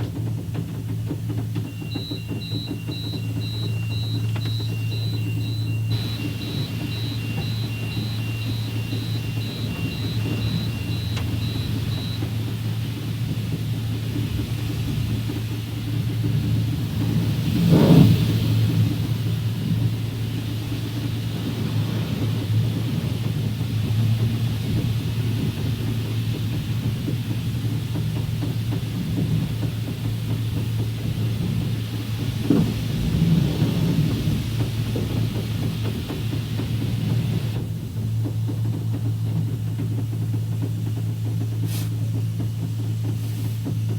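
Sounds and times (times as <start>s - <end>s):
car wash machinery hum: 0.0s - 43.9s
repeating electronic beep: 1.8s - 12.3s
water spraying hiss: 5.9s - 37.1s, 41.6s - 42.1s.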